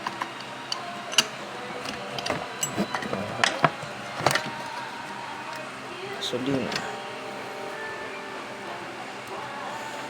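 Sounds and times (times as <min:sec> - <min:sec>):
tools clicking and knocking: 0:00.0 - 0:04.9.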